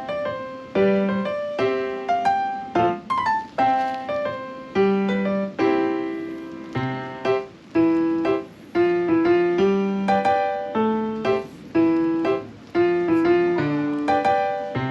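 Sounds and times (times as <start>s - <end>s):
gentle piano music: 0.0s - 14.9s.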